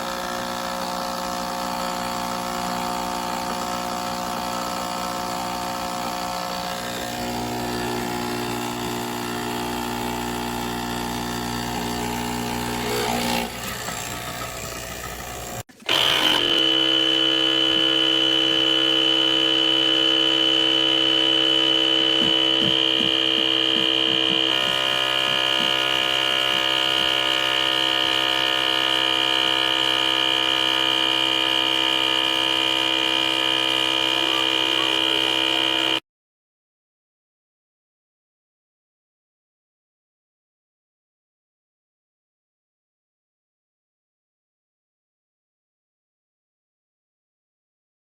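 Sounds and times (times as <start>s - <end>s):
espresso machine pump humming: 0.0s - 36.0s.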